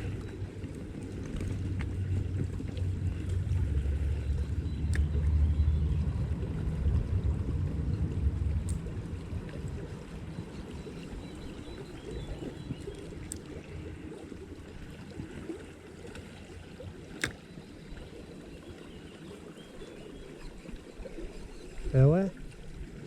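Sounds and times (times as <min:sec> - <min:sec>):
wind buffeting microphone: 0:00.0 - 0:14.2
stream flowing: 0:00.0 - 0:23.0.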